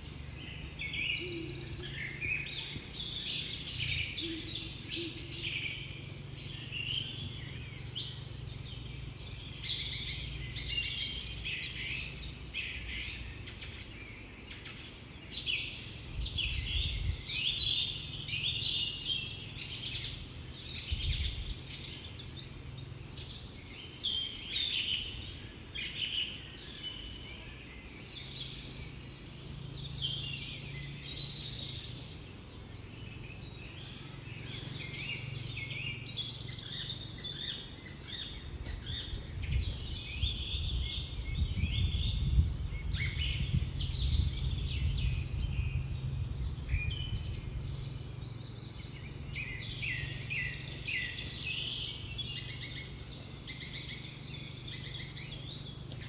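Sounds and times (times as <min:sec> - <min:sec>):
small birds chirping: 0:00.0 - 0:56.0
steady low rumble: 0:15.4 - 0:56.0.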